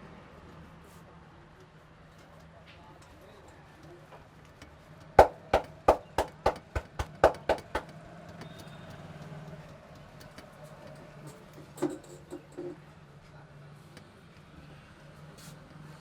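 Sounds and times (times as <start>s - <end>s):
sharp hand slaps on head: 5.2s - 7.8s.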